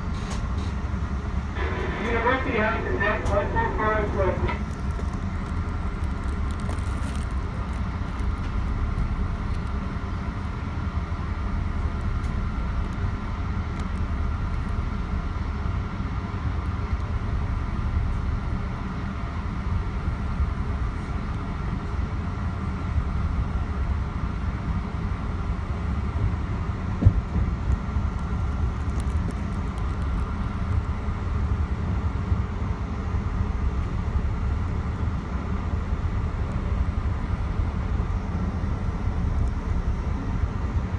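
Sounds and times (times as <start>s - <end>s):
train rumbling on track: 0.0s - 40.9s
faint steady whine: 0.9s - 22.4s.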